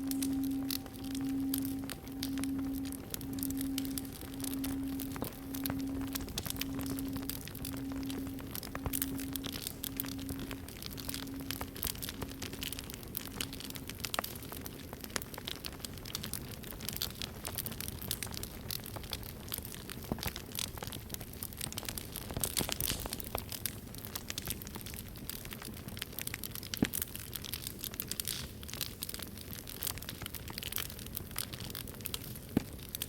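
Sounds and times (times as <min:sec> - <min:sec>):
singing bowl humming: 0:00.0 - 0:14.2
campfire crackling and popping: 0:00.0 - 0:33.0.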